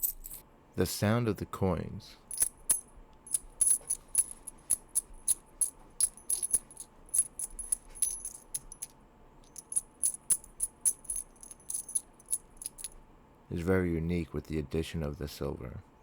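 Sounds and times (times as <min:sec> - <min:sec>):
coins clinking in hand: 0:00.0 - 0:00.4, 0:02.3 - 0:13.0.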